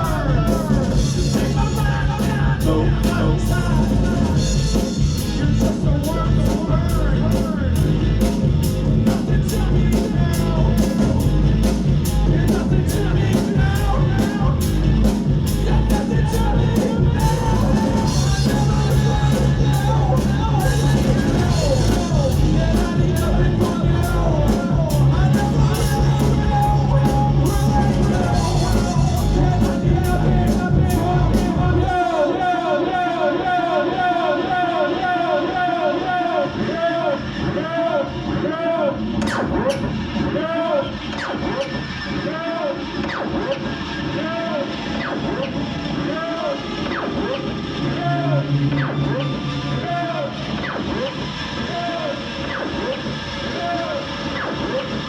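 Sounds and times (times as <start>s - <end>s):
person singing: 0.0s - 8.0s, 9.0s - 38.9s
low bass line: 0.0s - 32.0s
drum kit beating: 0.0s - 32.2s
live rock music: 0.0s - 55.0s.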